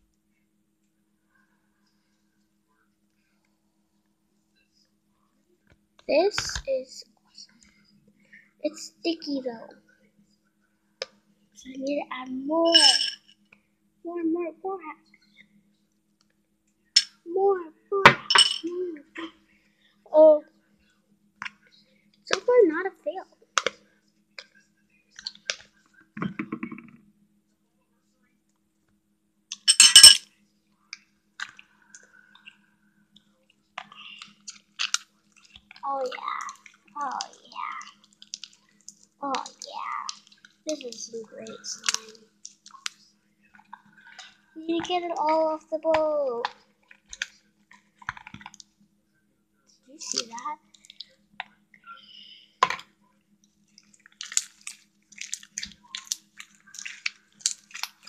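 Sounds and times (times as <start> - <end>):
utensil clinking against mixing bowl: 12.7 - 13.2
faint clicks and taps: 23.5 - 27.0, 30.9 - 48.8
slime crackling and squelching: 33.8 - 43.0, 53.9 - 58.0.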